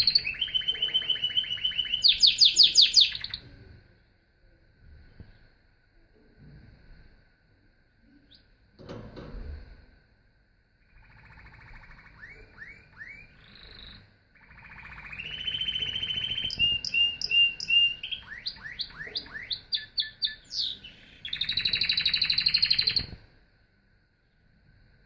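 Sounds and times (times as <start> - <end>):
canary singing trills: 0.0 - 3.6, 10.9 - 23.2.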